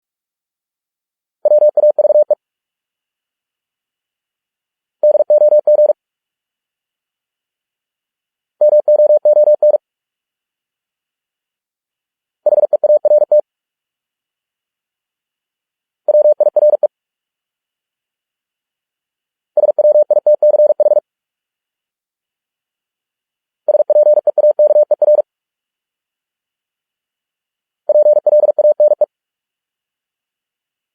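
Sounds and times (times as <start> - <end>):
morse code beeps: 8.6 - 9.8, 12.5 - 13.4, 19.6 - 21.0, 23.7 - 25.2, 27.9 - 29.1.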